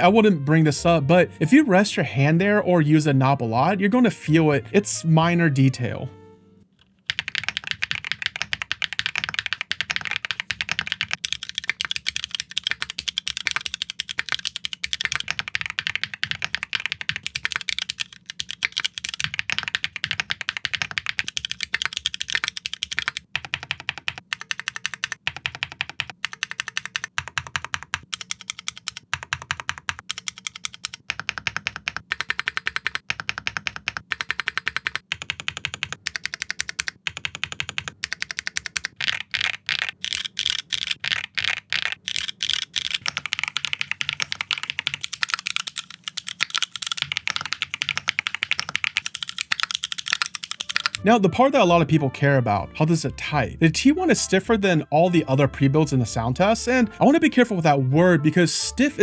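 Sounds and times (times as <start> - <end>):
fast mechanical keyboard typing: 7.0 - 51.0.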